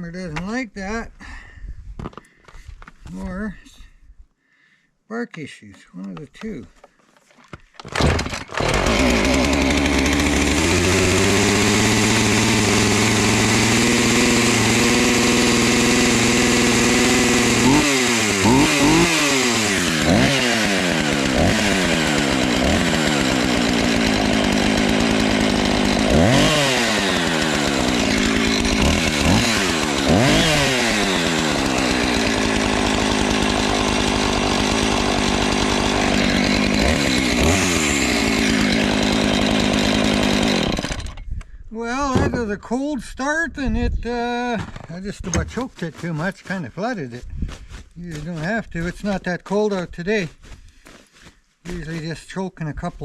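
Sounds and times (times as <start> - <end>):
chainsaw idling and revving: 8.0 - 41.3, 45.4 - 50.3, 51.7 - 52.2.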